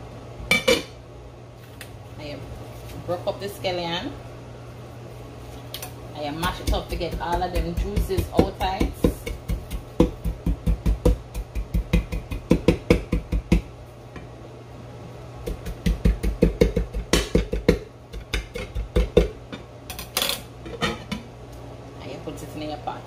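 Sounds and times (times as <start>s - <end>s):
quick knocks and thuds of mashing: 6.5s - 13.7s.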